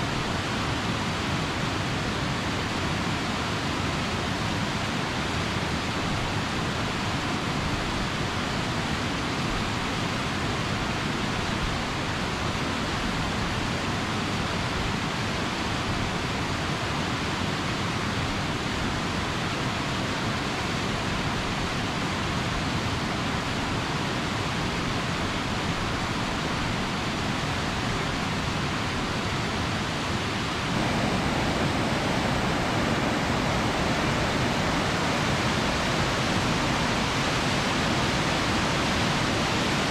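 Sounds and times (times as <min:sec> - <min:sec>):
waterfall rushing: 0:18.6 - 0:39.9.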